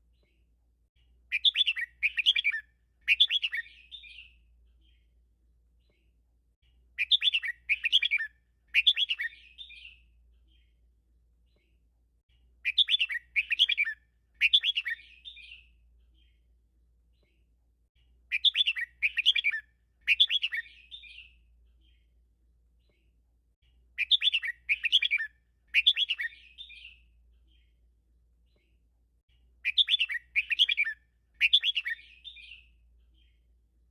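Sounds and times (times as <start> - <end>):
bird warbling song: 1.3 - 5.1, 7.0 - 10.8, 12.6 - 16.4, 18.3 - 22.1, 22.8 - 27.8, 29.6 - 33.5.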